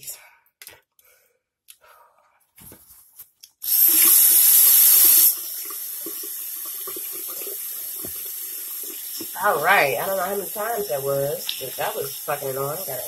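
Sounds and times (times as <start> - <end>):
water rushing into sink basin: 3.6 - 13.0.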